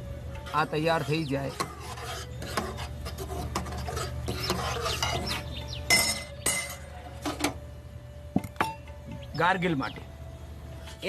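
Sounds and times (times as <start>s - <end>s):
spoon clinking on metal vessels: 3.5s - 7.6s.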